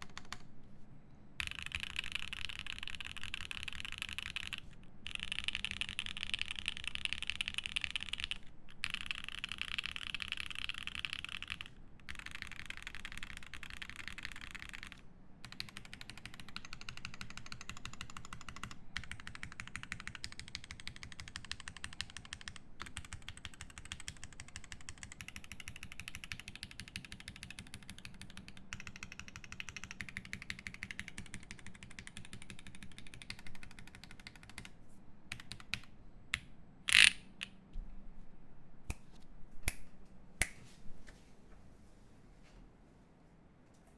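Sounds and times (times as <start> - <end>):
mechanical keyboard typing: 0.0 - 0.5, 1.4 - 34.7, 35.3 - 35.9, 36.9 - 37.2.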